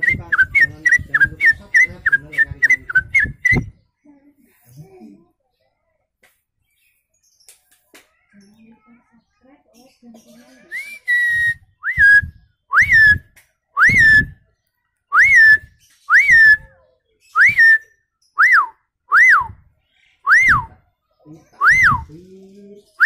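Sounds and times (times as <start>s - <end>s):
man whistling birdcall: 0.0s - 3.8s, 10.7s - 14.4s, 15.1s - 16.7s, 17.4s - 19.6s, 20.3s - 20.8s, 21.6s - 22.2s.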